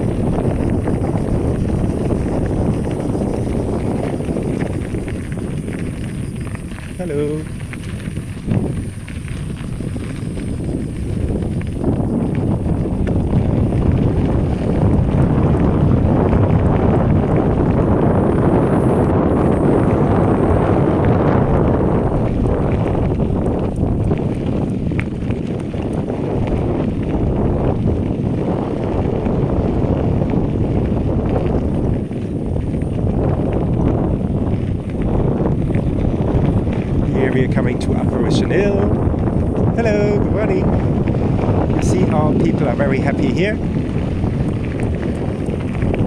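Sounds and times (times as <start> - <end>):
bicycle tyre and road noise: 0.0 - 46.0
wind buffeting microphone: 0.0 - 46.0.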